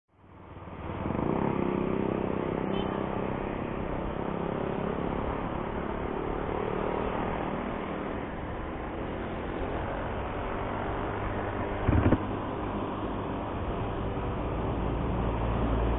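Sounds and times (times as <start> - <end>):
road and wind noise: 0.1 - 15.9
motorcycle engine running: 11.8 - 12.4.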